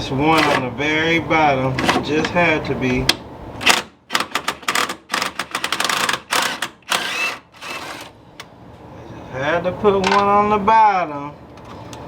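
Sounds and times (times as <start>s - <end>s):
socket ratchet clicking: 3.6s - 8.0s.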